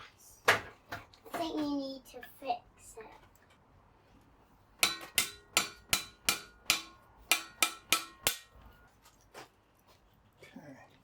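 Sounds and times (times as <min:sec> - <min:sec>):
hammer blows on metal: 0:04.8 - 0:08.6.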